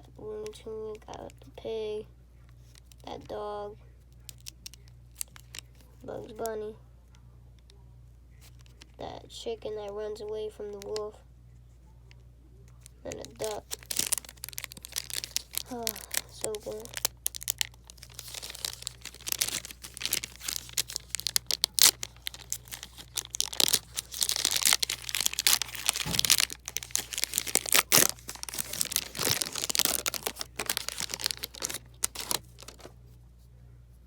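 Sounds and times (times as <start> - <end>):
wrapper crinkling and tearing: 4.2 - 5.9, 12.8 - 33.0.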